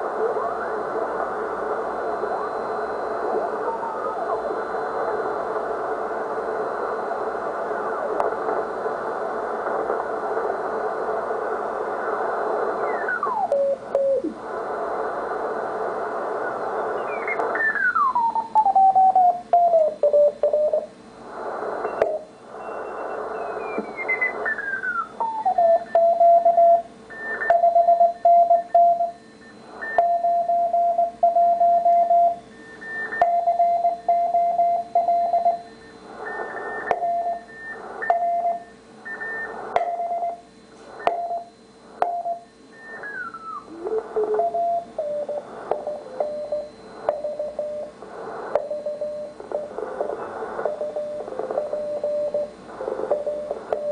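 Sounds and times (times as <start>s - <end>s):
radio band noise hiss: 0.0s - 53.9s
morse code tone: 29.9s - 47.9s, 48.6s - 49.8s, 50.7s - 52.5s.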